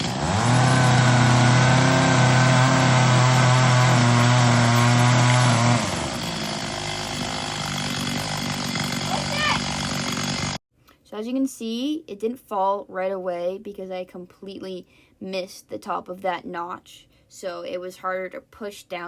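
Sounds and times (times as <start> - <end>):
chainsaw cutting tree trunk: 0.0 - 10.6.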